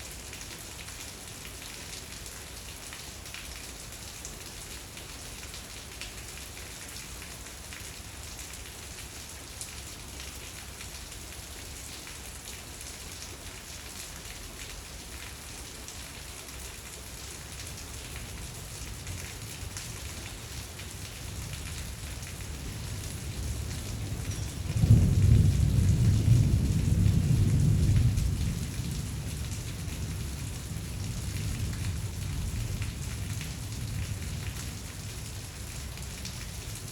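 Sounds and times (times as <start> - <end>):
steady rain falling: 0.0 - 36.9
thunder rumbling: 22.4 - 34.4.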